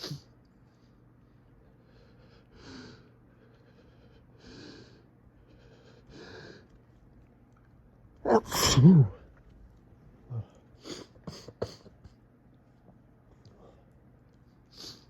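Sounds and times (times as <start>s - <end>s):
sharp breathy inhalations: 1.8s - 6.7s
loud sneeze: 8.2s - 9.2s.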